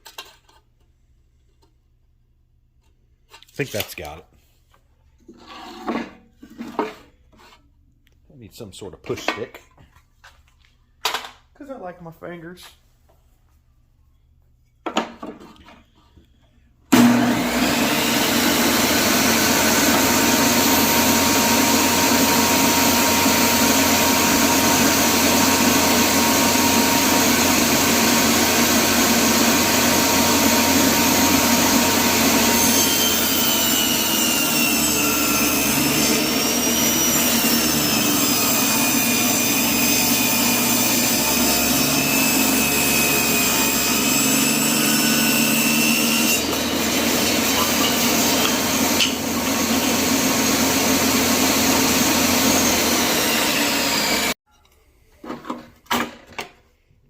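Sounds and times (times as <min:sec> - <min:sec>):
table saw running: 0:16.9 - 0:54.4
saw blade whistle ripping wood: 0:29.7 - 0:49.2.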